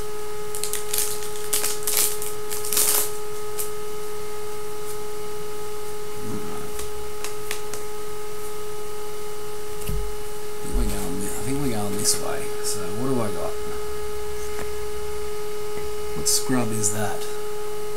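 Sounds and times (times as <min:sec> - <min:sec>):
steady electrical hum: 0:00.0 - 0:17.9
card pack crinkling rustles: 0:00.5 - 0:03.7.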